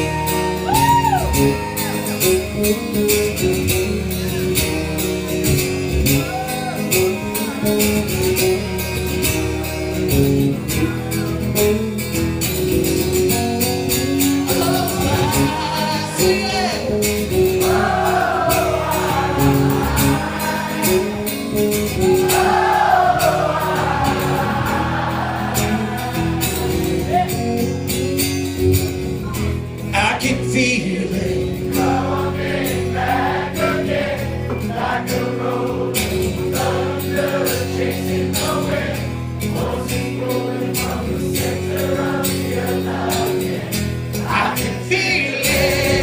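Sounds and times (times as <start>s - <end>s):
strummed acoustic guitar: 0.0s - 46.0s
wordless singing: 14.4s - 27.6s, 30.0s - 46.0s.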